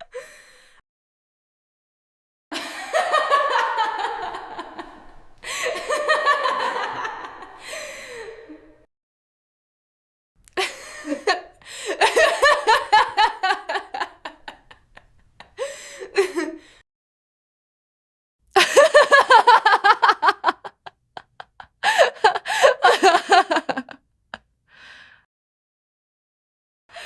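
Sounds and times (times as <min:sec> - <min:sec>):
faint breath: 0:07.6 - 0:08.7, 0:24.7 - 0:25.3
woman laughing: 0:10.6 - 0:16.6, 0:18.6 - 0:24.0.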